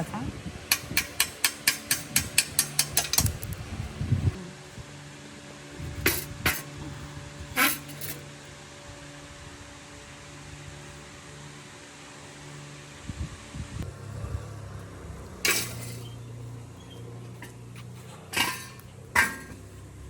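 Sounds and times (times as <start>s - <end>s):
steady low hum: 0.0s - 20.0s
metal tools clinking: 1.0s - 3.5s, 7.6s - 8.2s, 15.4s - 19.7s.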